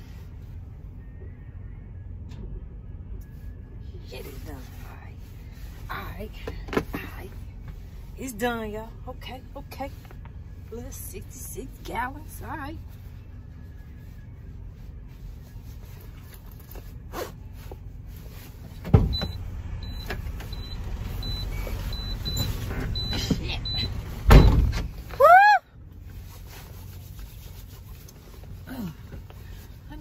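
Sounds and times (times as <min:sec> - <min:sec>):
steady low rumble: 0:00.0 - 0:30.0
short high beeps: 0:19.2 - 0:24.0
heavy thump: 0:24.2 - 0:24.9.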